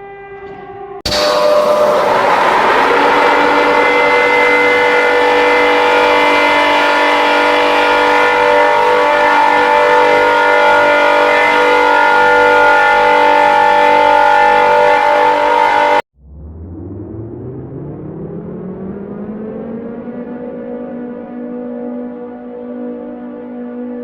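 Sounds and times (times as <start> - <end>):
alert siren steady chord: 1.1 - 23.8.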